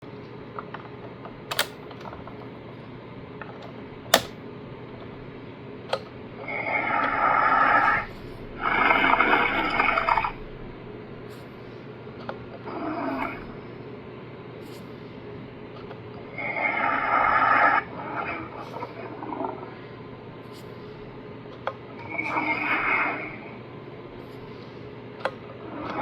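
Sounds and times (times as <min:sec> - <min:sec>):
sharp clicks: 0:01.5 - 0:01.8.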